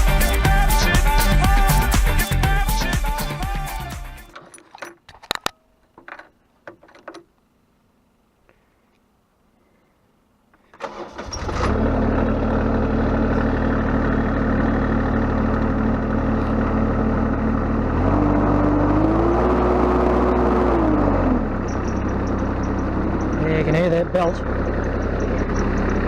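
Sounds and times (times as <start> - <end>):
excavator engine running: 0.0 - 4.4, 10.8 - 26.0
excavator engine cranking: 0.0 - 7.3, 10.6 - 26.0.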